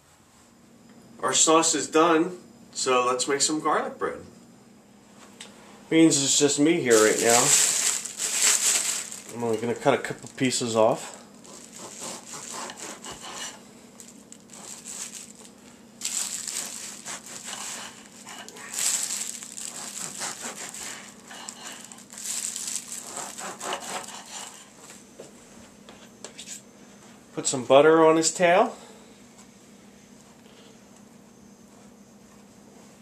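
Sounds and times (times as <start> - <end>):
knife sawing bread: 11.5 - 13.6, 14.6 - 14.9, 16.4 - 18.5, 19.7 - 22.0, 23.0 - 24.7.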